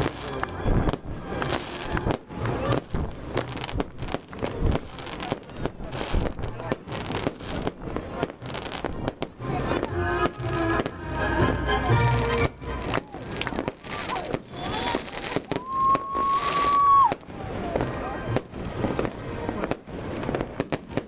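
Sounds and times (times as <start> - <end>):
music playing: 0.0 - 3.8, 8.4 - 13.7, 17.7 - 20.4
fireworks bangs and crackles: 0.0 - 21.0.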